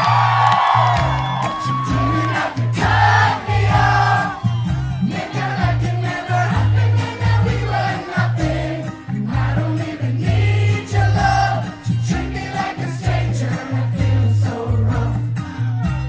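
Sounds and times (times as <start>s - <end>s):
live band playing pop song: 0.0s - 16.0s
pulsing bass line: 0.0s - 16.0s
person singing: 1.6s - 4.4s.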